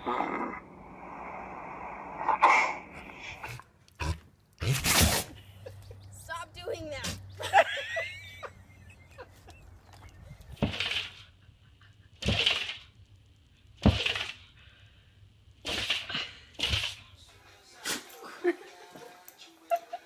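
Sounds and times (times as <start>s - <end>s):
pet sneezing: 4.6s - 5.5s, 17.8s - 18.2s.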